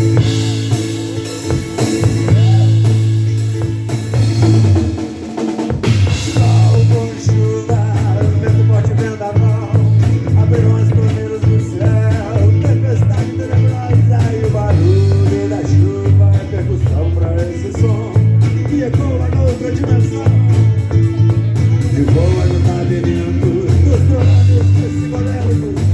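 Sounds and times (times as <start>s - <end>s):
person singing: 0.0s - 4.2s, 6.1s - 25.9s
bass line: 0.0s - 25.9s
drum kit with hi-hat beat: 0.0s - 25.9s.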